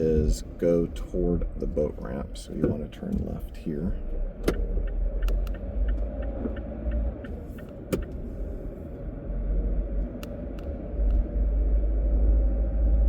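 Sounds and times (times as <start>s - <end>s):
car engine and road rumble: 0.0s - 13.0s
turn signal ticking: 2.4s - 9.1s.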